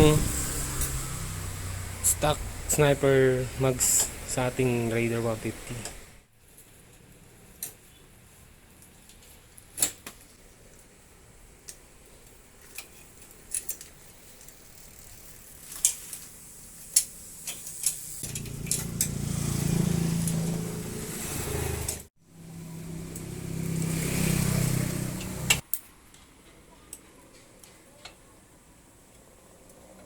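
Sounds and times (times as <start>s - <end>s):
vehicle engine humming: 0.0s - 6.2s, 18.2s - 25.6s.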